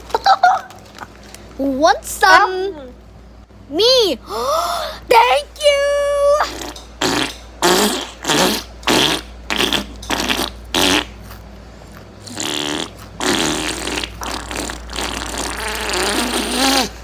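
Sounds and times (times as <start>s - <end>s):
crunchy chips being chewed: 0.0s - 1.6s, 6.5s - 17.0s.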